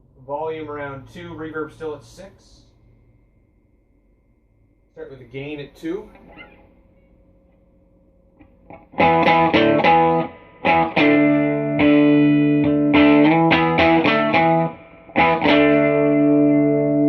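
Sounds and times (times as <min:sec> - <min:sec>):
electric guitar strummed chords: 0:08.7 - 0:17.0.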